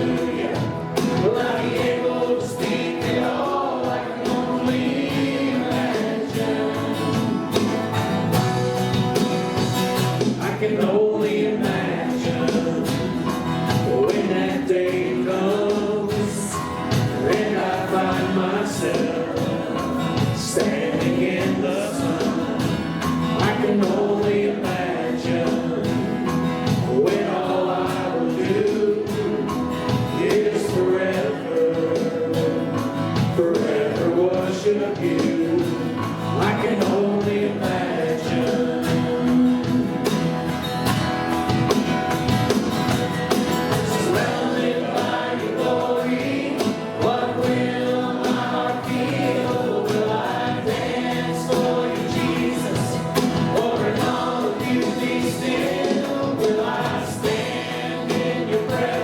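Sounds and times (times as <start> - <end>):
worship band and singers: 0.0 - 59.0.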